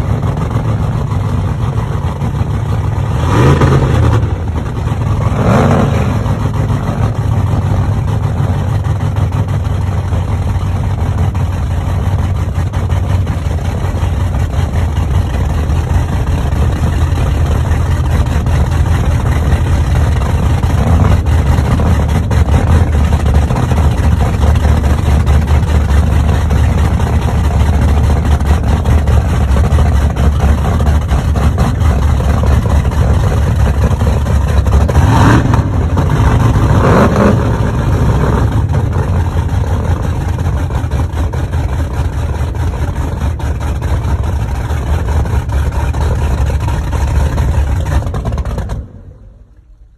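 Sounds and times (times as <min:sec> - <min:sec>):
large engine rumbling: 0:00.0 - 0:49.9.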